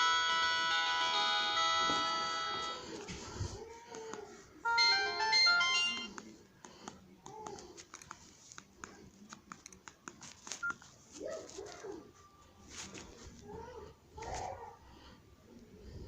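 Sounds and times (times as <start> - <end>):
phone chime tone: 0.0 - 3.0, 4.7 - 6.1.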